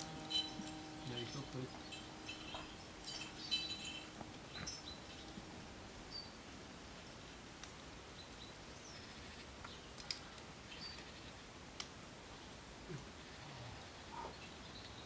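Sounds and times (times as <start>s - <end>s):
bird chirps: 0.0s - 5.5s.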